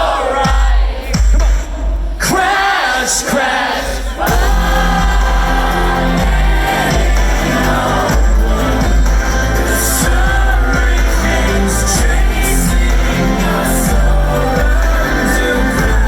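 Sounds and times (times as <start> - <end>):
crowd singing along: 0.0 - 16.0
lead vocal singing: 0.0 - 16.0
live rock band: 4.2 - 16.0
heavy bass: 4.3 - 16.0.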